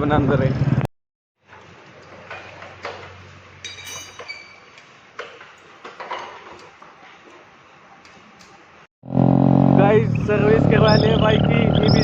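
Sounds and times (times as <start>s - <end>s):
metallic clinks and knocks: 2.3s - 6.7s.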